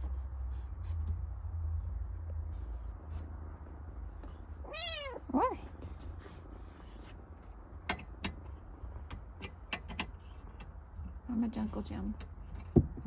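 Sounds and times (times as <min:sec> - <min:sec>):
cat meowing: 0:04.6 - 0:05.5.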